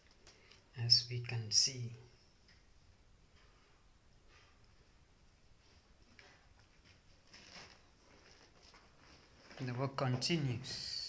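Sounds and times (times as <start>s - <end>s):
soft rustles: 3.3s - 10.9s.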